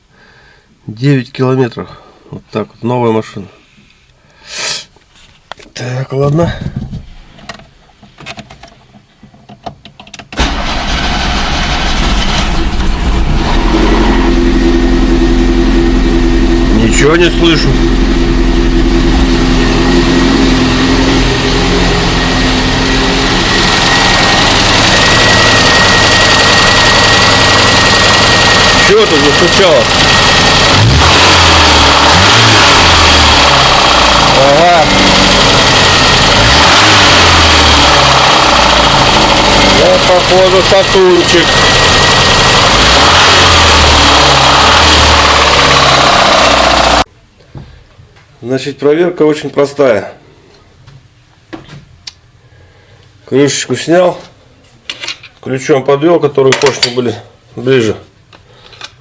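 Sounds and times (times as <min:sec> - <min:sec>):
car engine running: 0:10.4 - 0:47.1
thin engine whine: 0:10.4 - 0:47.1.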